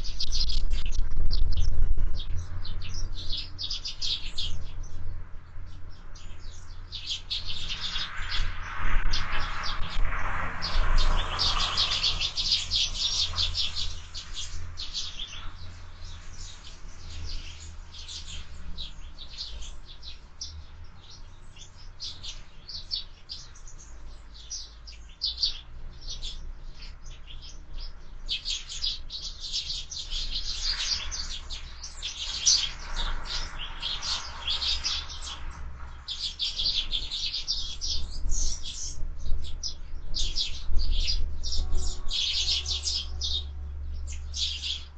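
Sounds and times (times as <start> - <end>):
low steady rumble: 0.0 - 6.8
sparrows chirping: 0.0 - 44.9.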